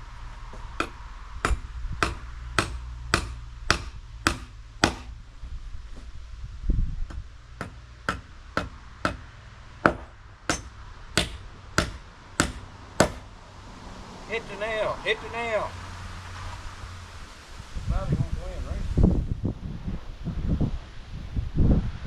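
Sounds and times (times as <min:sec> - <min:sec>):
heavy dull thud: 0:00.5 - 0:05.2, 0:07.0 - 0:13.3
hammer driving nails into wood: 0:00.8 - 0:05.1, 0:07.1 - 0:13.2.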